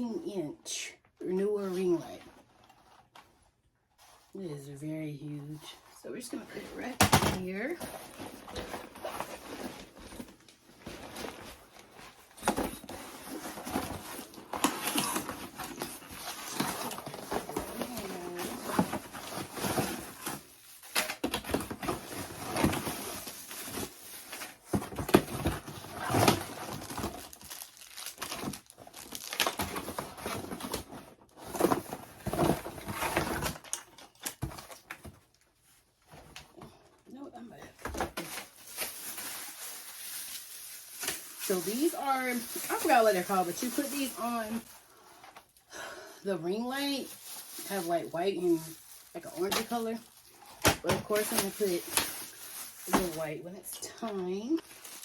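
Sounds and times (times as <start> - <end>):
plastic packaging crinkling: 7.6 - 35.0, 38.1 - 45.6, 46.6 - 55.0.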